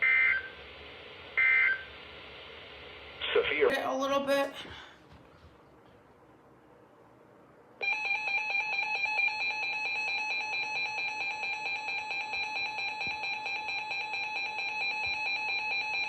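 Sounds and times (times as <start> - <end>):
piercing electronic alarm: 0.0 - 0.6, 1.3 - 2.1, 7.8 - 16.0.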